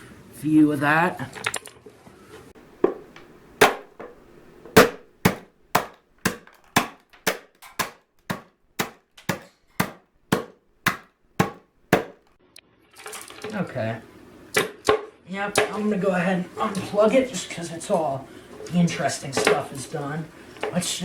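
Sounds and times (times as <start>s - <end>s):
sharp knocks: 2.8s - 12.3s.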